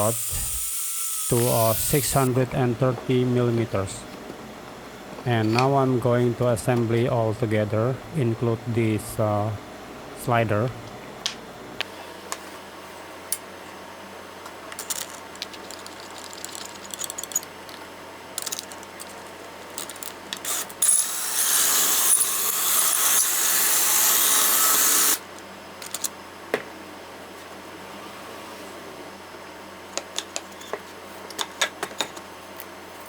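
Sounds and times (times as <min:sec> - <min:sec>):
handheld power tool running: 0:00.0 - 0:02.3, 0:19.9 - 0:25.2
metal and wooden parts clicking: 0:14.7 - 0:17.8, 0:18.4 - 0:19.2.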